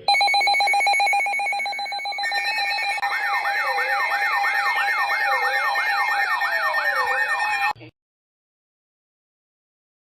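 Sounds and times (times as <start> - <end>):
steady beep tone: 0.0 - 7.8
electronic siren sweeping: 0.0 - 7.9
slower siren wail: 0.6 - 7.8.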